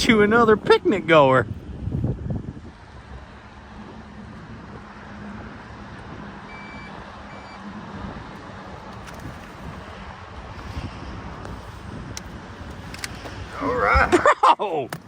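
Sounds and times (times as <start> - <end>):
wind and open water: 0.0 - 15.0
high-pitched electronic beeps: 6.5 - 7.6.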